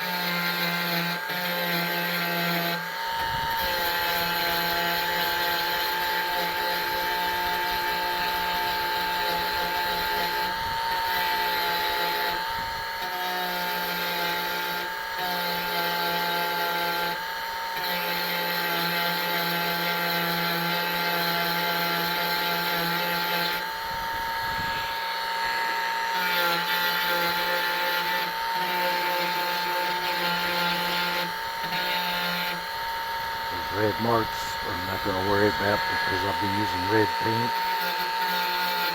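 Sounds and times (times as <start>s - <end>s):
rotary tool wire brush whine: 0.0s - 38.9s.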